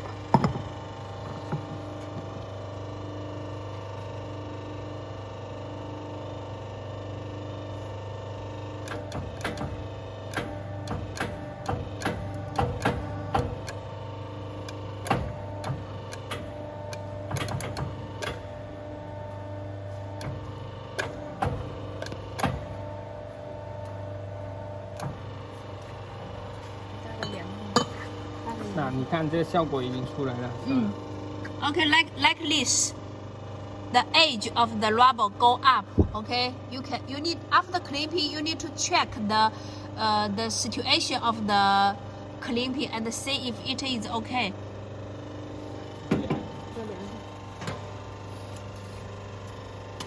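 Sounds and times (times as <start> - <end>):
machine motor hum: 0.0 - 50.0.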